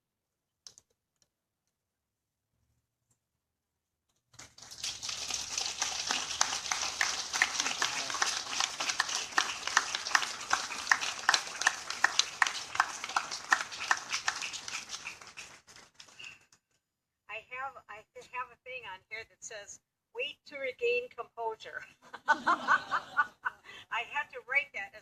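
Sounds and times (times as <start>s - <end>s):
crowd applauding: 4.4s - 16.4s.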